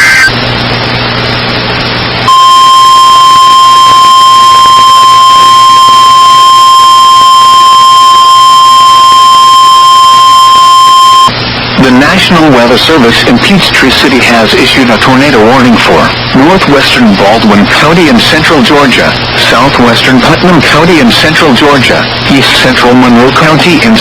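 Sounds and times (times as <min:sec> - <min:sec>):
steady alert tone: 0:00.0 - 0:00.4, 0:02.2 - 0:12.3
radio hiss: 0:00.0 - 0:02.3, 0:11.3 - 0:24.0.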